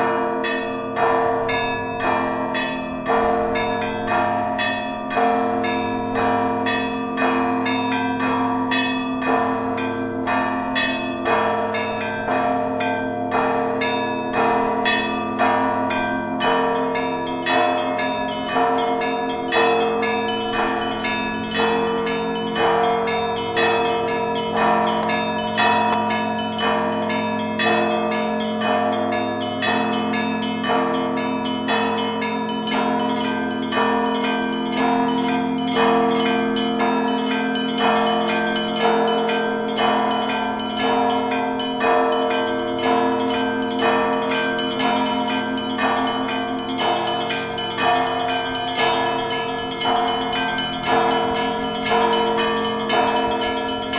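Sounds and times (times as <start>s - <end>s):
small church bells ringing: 0.0s - 53.9s
low bells humming: 0.1s - 33.0s, 33.7s - 53.9s.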